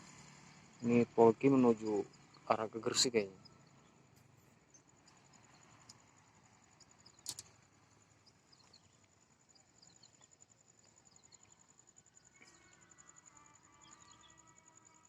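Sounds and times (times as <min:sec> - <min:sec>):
high insect trill: 0:00.0 - 0:15.0
sharp click: 0:07.2 - 0:07.5.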